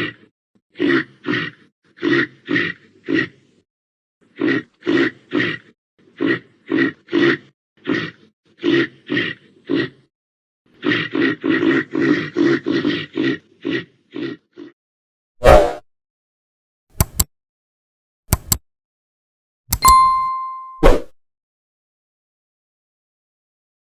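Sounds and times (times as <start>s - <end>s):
reindeer grunting: 4.2s - 10.1s.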